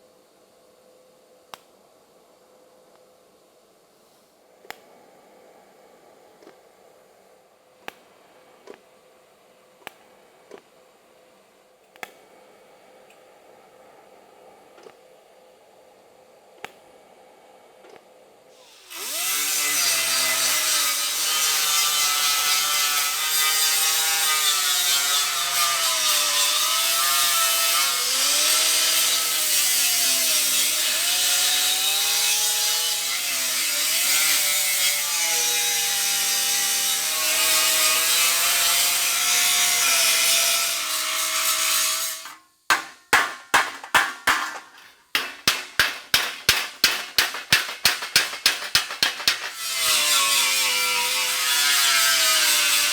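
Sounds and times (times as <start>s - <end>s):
power grinder on sheet steel: 18.6s - 42.4s, 44.5s - 52.9s.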